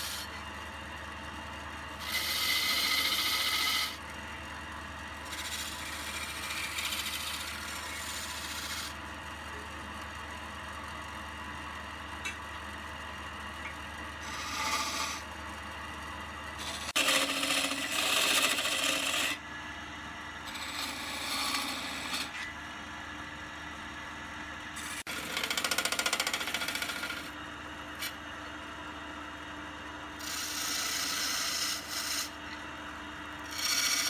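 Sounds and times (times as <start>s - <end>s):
turning tool scraping wood: 0.0s - 0.4s, 2.0s - 4.0s, 5.2s - 9.0s, 14.2s - 15.3s, 16.6s - 19.4s, 20.4s - 22.5s, 24.8s - 27.3s, 30.2s - 32.6s, 33.4s - 34.0s
wood lathe humming: 0.0s - 0.5s, 1.9s - 4.2s, 5.1s - 9.0s, 14.2s - 19.4s, 20.4s - 22.4s, 24.8s - 27.4s, 30.2s - 32.6s, 33.4s - 34.0s.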